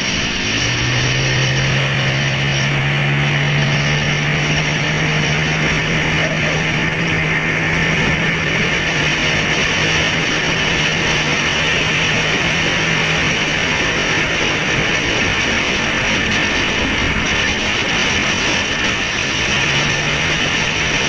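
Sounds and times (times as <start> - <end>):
loud steady rushing noise: 0.0 - 21.0.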